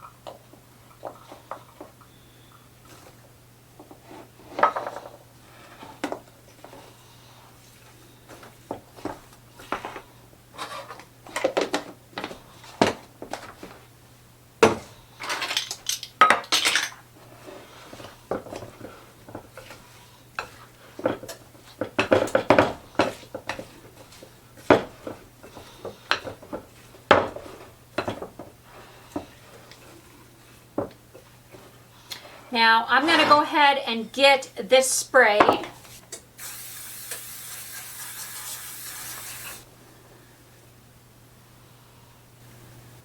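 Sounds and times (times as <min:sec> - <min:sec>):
utensil scraping batter in bowl: 0:37.1 - 0:39.6.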